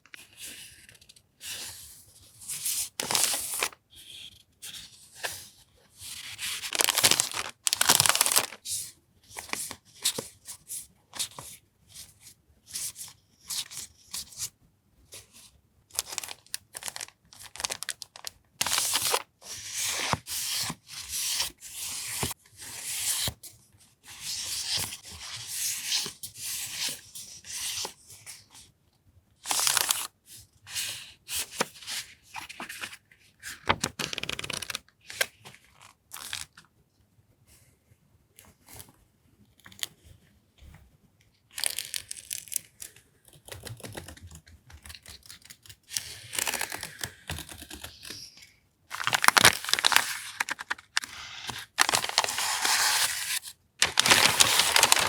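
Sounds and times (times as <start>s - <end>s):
packaging rustling and tearing: 3.0s - 3.8s, 6.2s - 8.7s, 16.0s - 19.3s, 48.9s - 55.0s.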